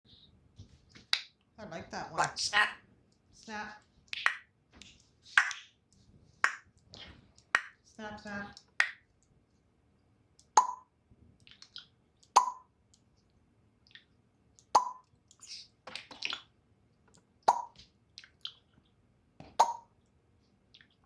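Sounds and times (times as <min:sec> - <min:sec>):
parrot clicks and chirps: 0:04.1 - 0:05.8, 0:11.5 - 0:12.7
parrot making snapping pops: 0:04.1 - 0:05.8, 0:12.3 - 0:12.6.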